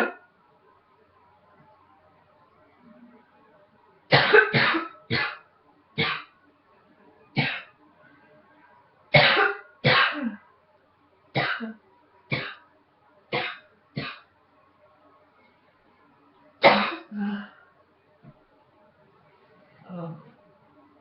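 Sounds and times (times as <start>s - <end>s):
woman coughing: 9.2s - 10.4s, 11.4s - 11.8s, 16.6s - 17.2s.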